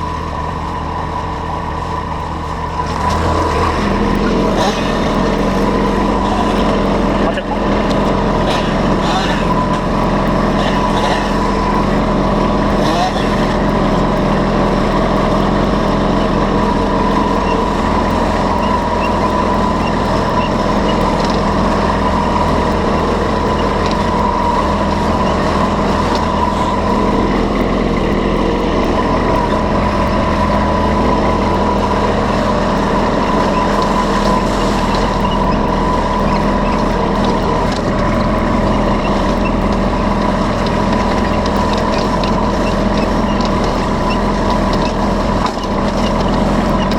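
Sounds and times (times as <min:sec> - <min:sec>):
large engine humming: 0:00.0 - 0:46.9.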